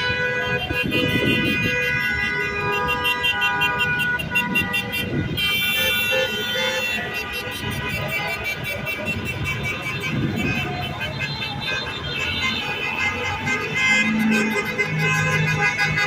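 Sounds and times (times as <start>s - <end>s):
car horns honking: 0.0s - 16.0s
freeway traffic passing: 0.0s - 16.0s.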